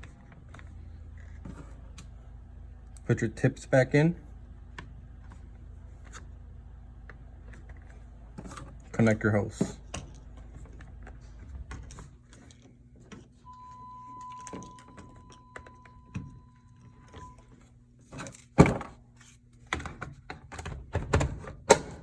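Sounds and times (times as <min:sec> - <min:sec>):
faint steady high tone: 0:13.4 - 0:17.6.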